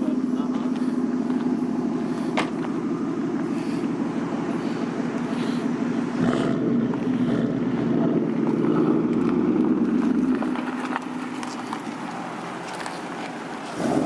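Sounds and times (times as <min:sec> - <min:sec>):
car engine idling rumble: 0:00.0 - 0:14.0.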